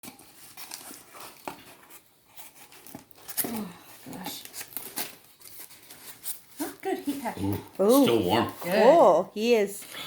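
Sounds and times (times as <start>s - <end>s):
packaging tearing and crinkling: 2.5s - 6.8s.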